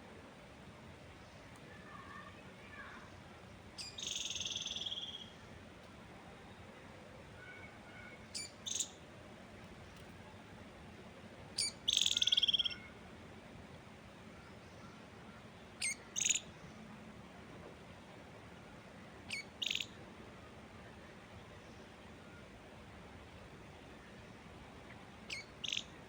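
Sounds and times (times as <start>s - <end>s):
faint wind hiss: 0.0s - 26.0s
songbird calling: 3.8s - 5.4s, 7.4s - 9.0s, 11.6s - 13.0s, 14.4s - 16.5s, 19.3s - 20.0s, 25.3s - 26.0s.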